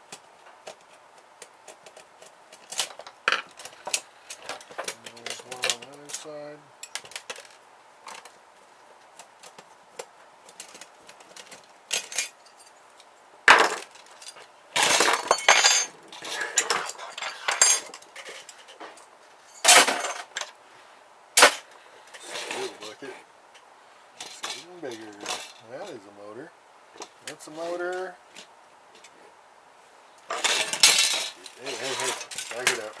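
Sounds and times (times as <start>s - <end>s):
printer parts clinking and clattering: 10.5s - 12.4s, 19.6s - 20.5s, 30.3s - 33.0s.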